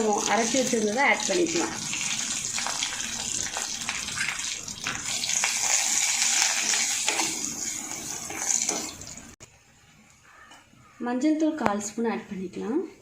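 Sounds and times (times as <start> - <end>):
paste sizzling in hot oil: 0.0 - 9.4.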